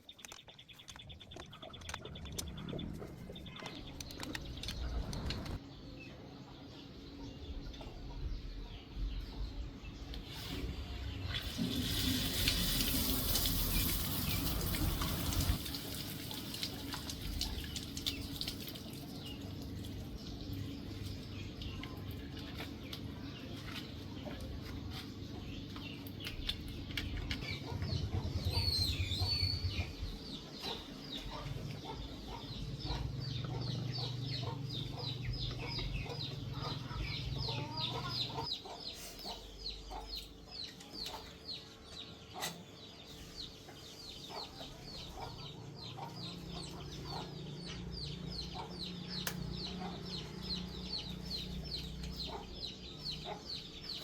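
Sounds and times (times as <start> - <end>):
water running: 11.3 - 20.6
chickens clucking: 20.1 - 54.0.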